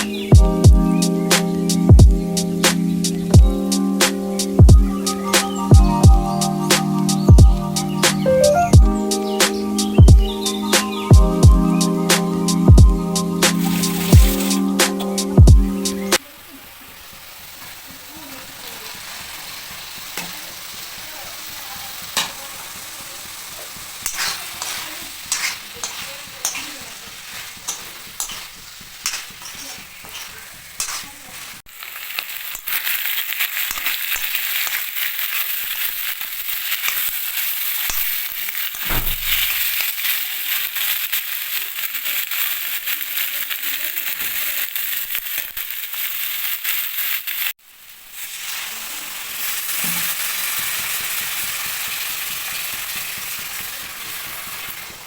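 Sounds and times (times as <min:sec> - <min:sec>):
food sizzling in hot oil: 0:00.0 - 0:55.0
utensil scraping a pan: 0:24.0 - 0:31.6.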